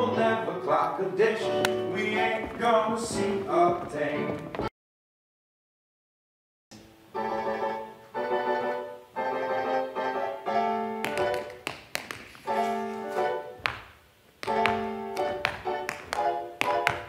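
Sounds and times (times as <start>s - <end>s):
piano chords: 0.0s - 4.7s, 6.9s - 17.0s
sharp taps: 11.0s - 12.5s, 13.6s - 17.0s.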